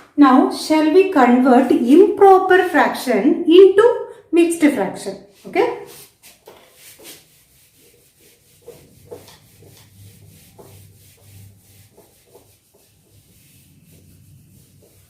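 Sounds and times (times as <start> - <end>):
pen rubbing strokes of handwriting: 5.8 - 15.0.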